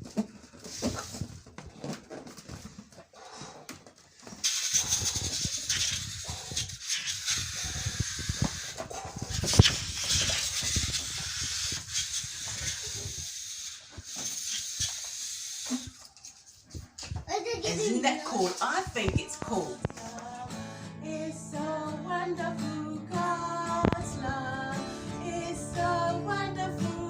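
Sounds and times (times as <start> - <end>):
air hissing out of balloon: 4.3 - 16.1.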